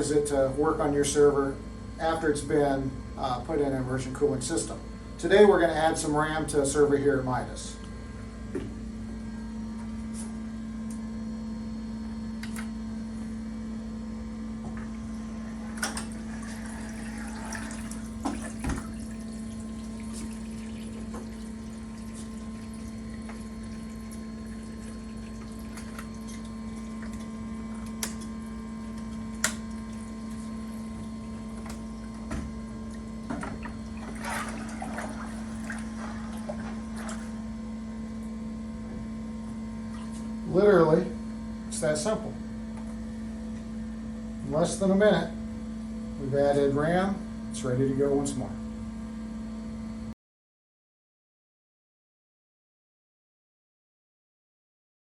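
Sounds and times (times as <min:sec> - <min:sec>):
equipment hum: 0:00.0 - 0:50.1
liquid drips and splashes: 0:16.4 - 0:32.2.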